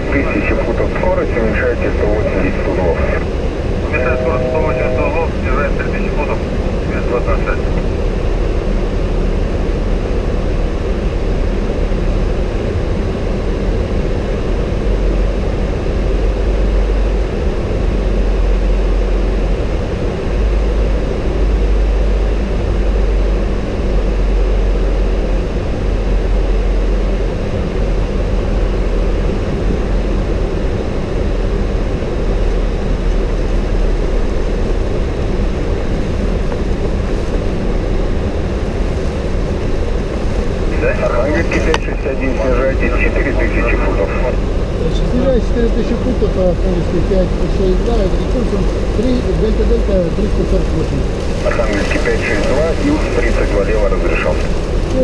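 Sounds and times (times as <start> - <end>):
cockpit engine rumble and airflow hiss: 0.0 - 55.0.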